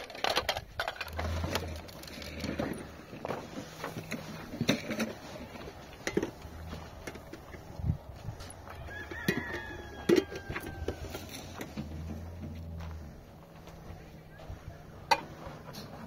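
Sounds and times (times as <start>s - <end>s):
rooster crowing: 8.6s - 11.8s.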